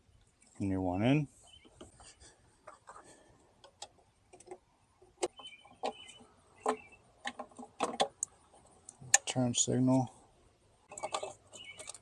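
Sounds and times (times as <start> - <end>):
plastic clicks of bulbs twisted: 5.2 - 9.3, 10.9 - 12.0.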